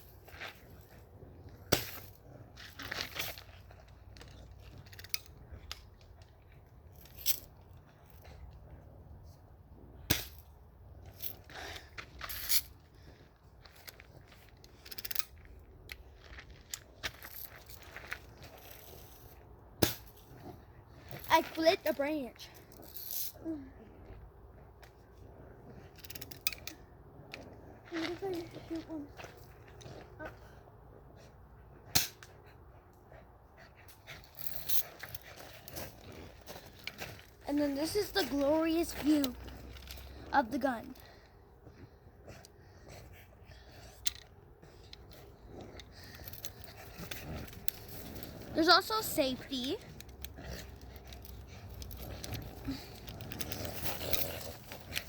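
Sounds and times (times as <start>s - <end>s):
dog panting: 27.8s - 55.0s
gun handling clicks and rustling: 44.0s - 45.2s.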